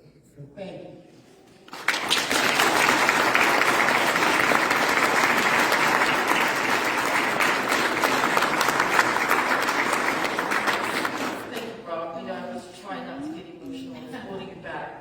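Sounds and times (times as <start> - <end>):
audience applauding: 1.7 - 11.6.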